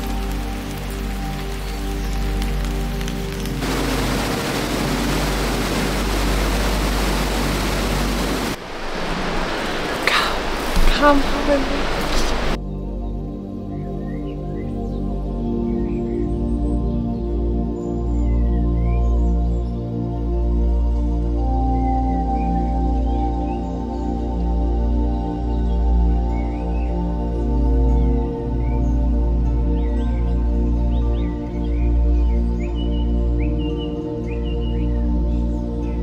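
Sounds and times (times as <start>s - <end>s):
creek water rushing: 0.0s - 12.6s
ambient pad music: 0.0s - 36.0s
deep rumble: 3.6s - 12.6s.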